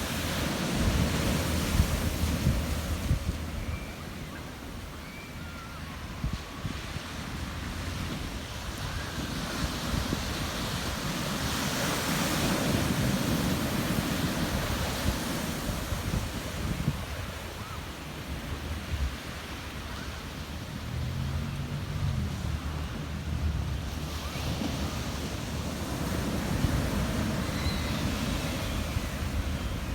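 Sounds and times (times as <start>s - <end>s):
wind buffeting microphone: 0.0s - 4.9s, 6.0s - 19.3s
ocean surf: 0.0s - 29.9s.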